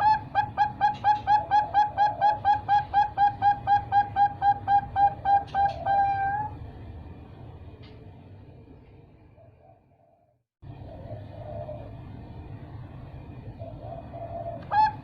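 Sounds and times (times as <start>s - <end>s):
dove cooing: 0.0s - 6.6s, 9.4s - 12.2s, 13.6s - 15.0s.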